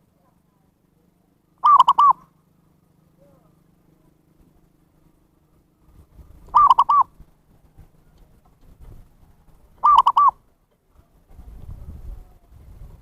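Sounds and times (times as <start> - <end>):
dove cooing: 1.6 - 2.3, 5.9 - 10.5.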